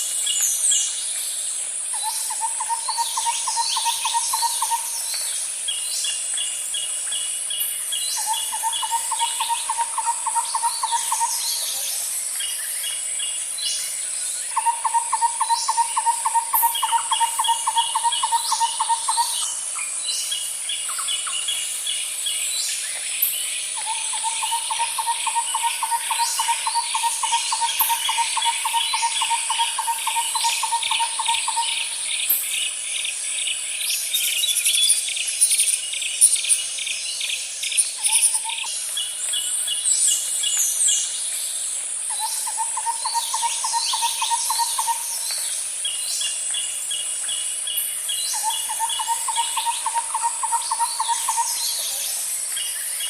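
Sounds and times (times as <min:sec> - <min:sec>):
fast pulsed insect calls: 0:00.0 - 0:53.0
high insect drone: 0:00.0 - 0:53.0
bird chirps: 0:22.4 - 0:41.2, 0:42.1 - 0:53.0.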